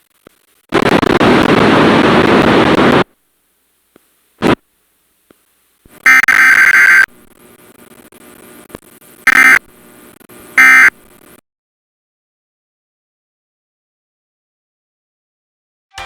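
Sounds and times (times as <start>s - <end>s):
faint radio hiss: 0.0s - 11.4s
buzzing data tones: 6.0s - 11.4s.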